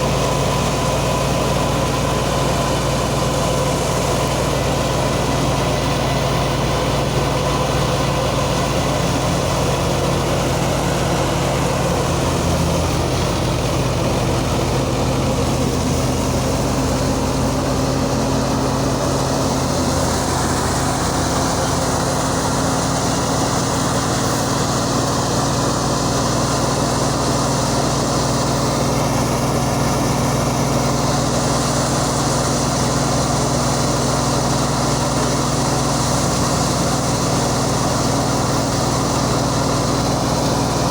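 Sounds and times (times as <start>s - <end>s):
harvester engine droning: 0.0s - 40.9s.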